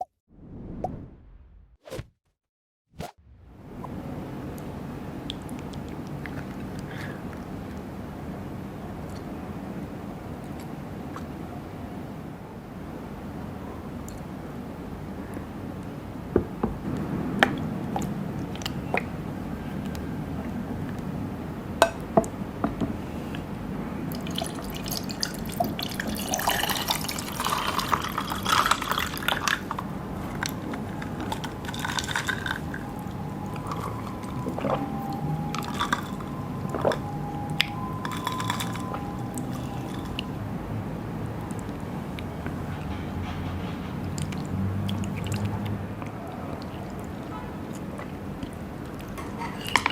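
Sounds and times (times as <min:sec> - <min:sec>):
dripping: 0:24.1 - 0:40.2
liquid pouring and sloshing: 0:24.1 - 0:40.3
dishes and utensils clicking: 0:49.1 - 0:49.9.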